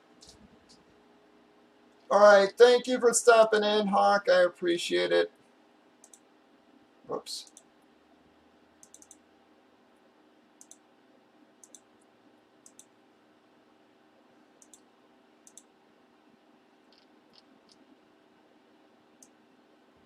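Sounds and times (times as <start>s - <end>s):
low steady hum: 0.0s - 20.0s
computer mouse clicks: 6.0s - 6.3s, 7.4s - 7.7s, 8.8s - 9.2s, 10.6s - 10.8s, 11.6s - 11.9s, 12.6s - 12.9s, 14.6s - 15.7s, 16.9s - 17.9s.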